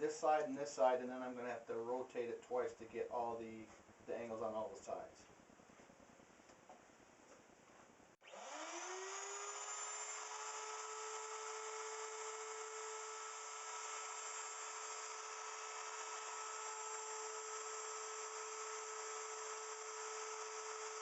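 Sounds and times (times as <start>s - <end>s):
router motor whining: 8.2s - 21.0s.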